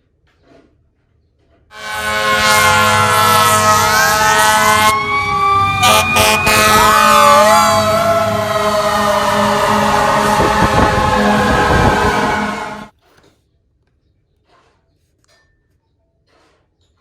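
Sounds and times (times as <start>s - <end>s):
emergency sirens wailing: 1.7s - 12.9s.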